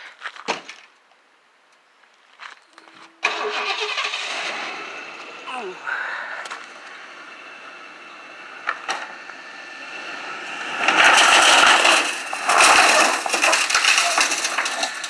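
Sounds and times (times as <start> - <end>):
wooden pallet crunching and cracking: 10.5 - 15.0.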